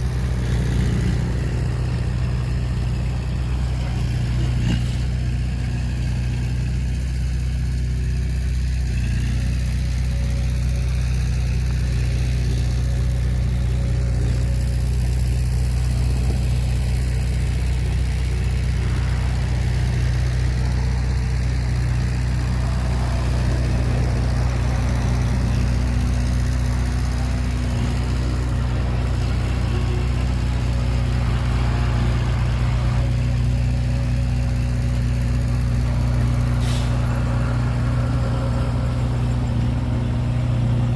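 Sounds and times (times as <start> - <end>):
diesel engine running steadily: 0.0 - 40.9.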